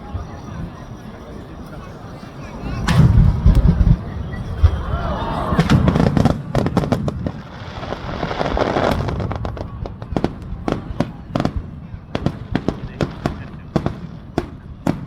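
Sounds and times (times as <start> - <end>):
firework shell bursts rumbling: 2.7 - 15.0
firework crackling pops: 5.6 - 15.0.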